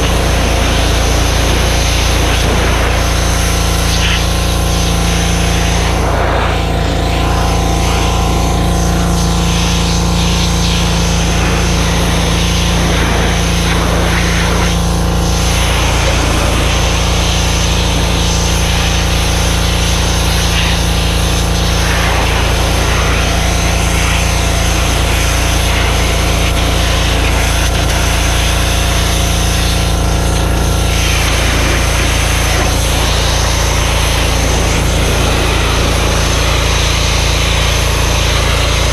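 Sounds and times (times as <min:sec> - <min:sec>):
pressure washer engine droning: 0:00.0 - 0:38.9
water spray hissing: 0:00.0 - 0:38.9.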